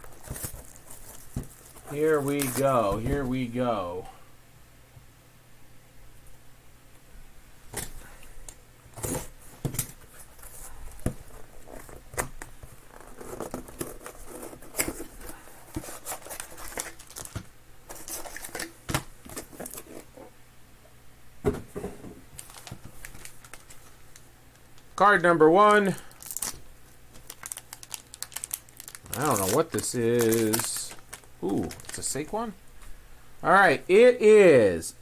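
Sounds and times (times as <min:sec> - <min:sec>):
packaging rustling and tearing: 0:00.0 - 0:03.4, 0:10.2 - 0:20.1, 0:22.4 - 0:25.0, 0:25.7 - 0:32.4.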